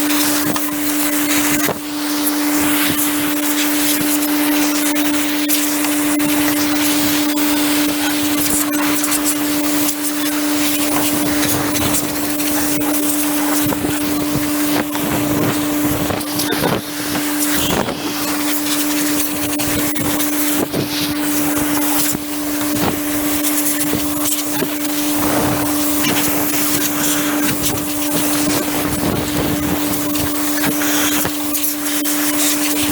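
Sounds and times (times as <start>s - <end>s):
machine hum: 0.0s - 32.9s
compressed air blow gun hissing: 20.0s - 32.9s.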